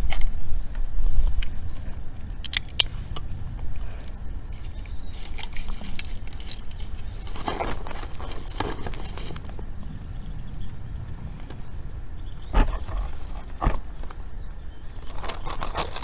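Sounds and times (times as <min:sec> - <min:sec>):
wind rumble on microphone: 0:00.0 - 0:16.0
sharp clicks and scrapes: 0:02.4 - 0:09.6, 0:14.9 - 0:16.0
rustling scrape: 0:02.9 - 0:09.9, 0:10.8 - 0:16.0.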